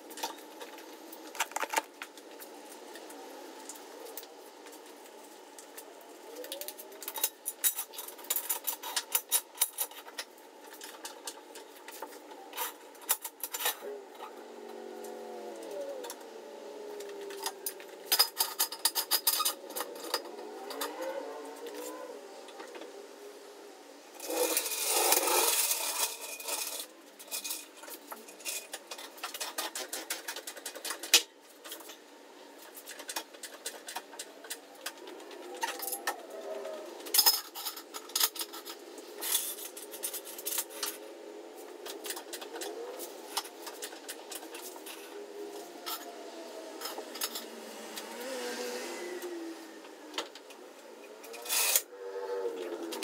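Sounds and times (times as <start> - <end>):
metal tools clinking: 32.6 - 47.6, 51.1 - 51.9.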